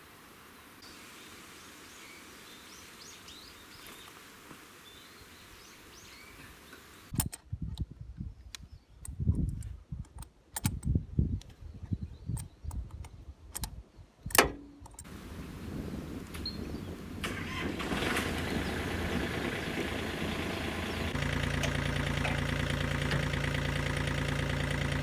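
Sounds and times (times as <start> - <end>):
birds chirping: 0.4 - 7.1, 14.7 - 25.0.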